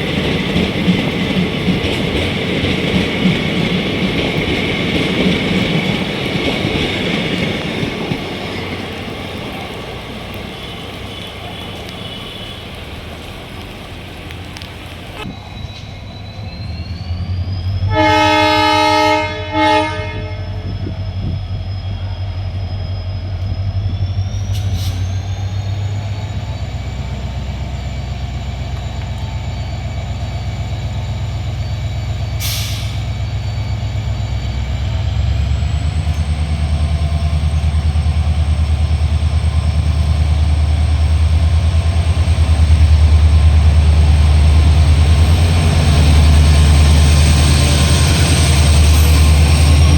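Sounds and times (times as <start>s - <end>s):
diesel locomotive engine hum: 0.0s - 49.9s
train horn blasts: 10.5s - 12.9s, 17.8s - 20.9s.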